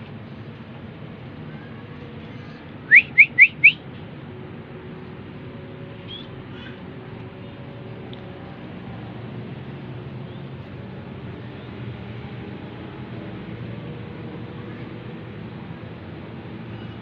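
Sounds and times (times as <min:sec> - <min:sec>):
bird rising whistles: 0:02.9 - 0:03.8.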